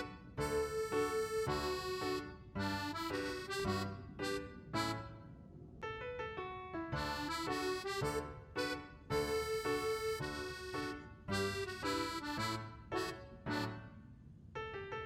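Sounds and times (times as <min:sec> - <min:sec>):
bouncy instrumental music: 0:00.0 - 0:05.1, 0:07.0 - 0:13.8.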